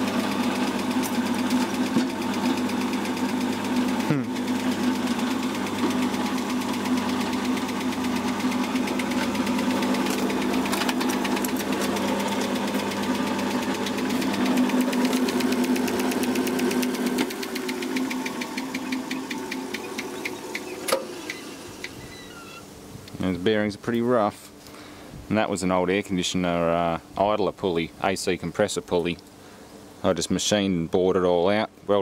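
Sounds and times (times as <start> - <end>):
electric motor humming: 0.0 - 23.2.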